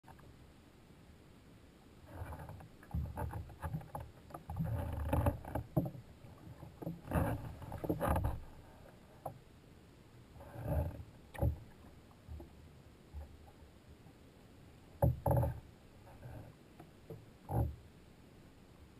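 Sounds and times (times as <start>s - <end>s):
paddle splashing in water: 2.1s - 8.9s.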